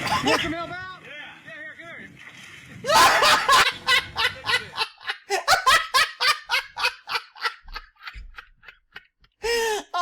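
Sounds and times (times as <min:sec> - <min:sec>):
man laughing hard: 0:02.9 - 0:10.0.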